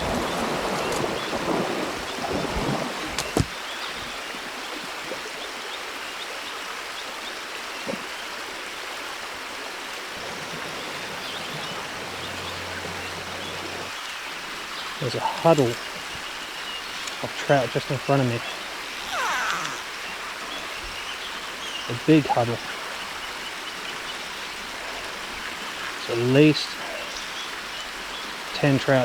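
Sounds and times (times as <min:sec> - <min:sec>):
river flowing: 0:10.5 - 0:26.3.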